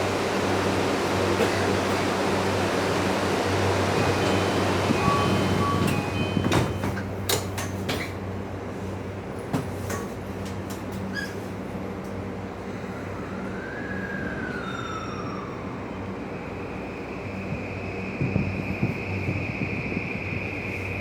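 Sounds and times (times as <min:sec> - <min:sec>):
train cabin rumble: 0:00.0 - 0:11.6, 0:16.6 - 0:21.0.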